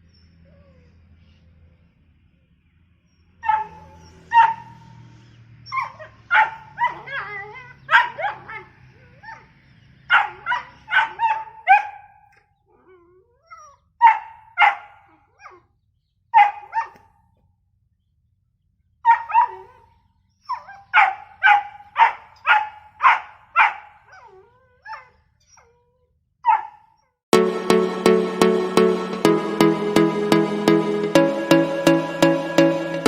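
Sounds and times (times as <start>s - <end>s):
dog barking: 3.4s - 5.0s, 5.7s - 8.7s, 10.1s - 12.4s, 14.0s - 15.7s, 16.3s - 17.2s, 19.0s - 19.9s, 20.5s - 24.3s, 26.4s - 27.0s.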